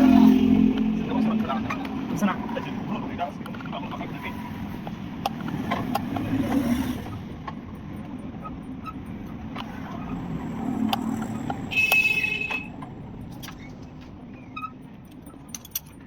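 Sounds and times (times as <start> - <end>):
low vehicle-like hum: 0.0 - 16.0.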